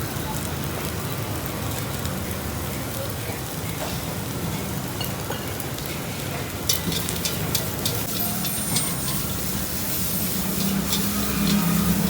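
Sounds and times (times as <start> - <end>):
noodles sizzling in a wok: 0.0 - 12.0
metal spatula clicking on pan: 6.6 - 9.6, 10.3 - 12.0.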